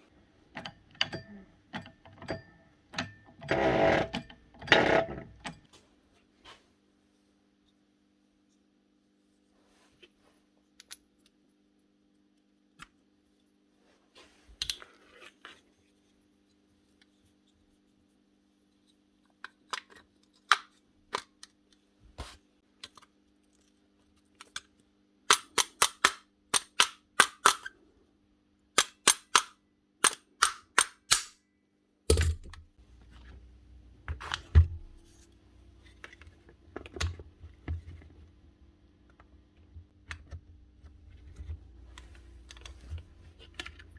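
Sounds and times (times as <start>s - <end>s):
nail gun clicks: 28.8s - 31.4s.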